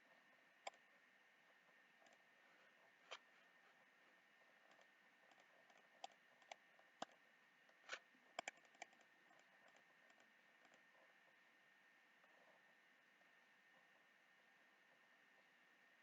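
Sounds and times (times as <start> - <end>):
faint high-pitched hum: 0.0 - 16.0
mouse and keyboard clicks: 4.6 - 10.8.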